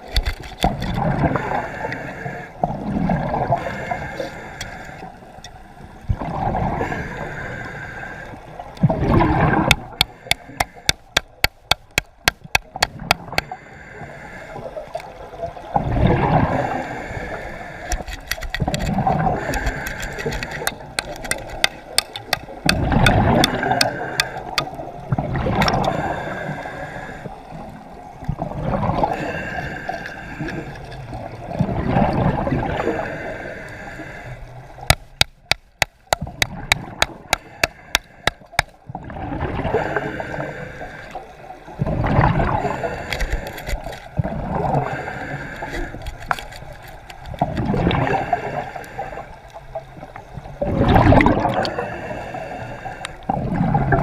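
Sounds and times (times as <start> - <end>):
water gurgling and rushing: 0.0 - 54.0
sharp clicks: 17.9 - 24.8.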